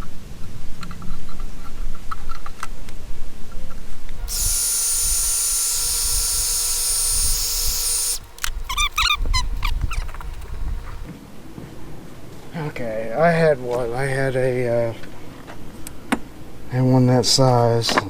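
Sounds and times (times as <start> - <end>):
electric power tool whining: 4.2 - 11.1
short squeaks: 4.2 - 11.1.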